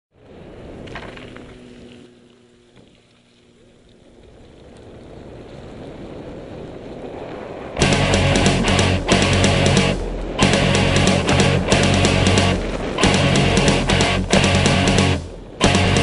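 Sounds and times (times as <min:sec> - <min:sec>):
wind rushing on microphone: 0:04.2 - 0:07.8.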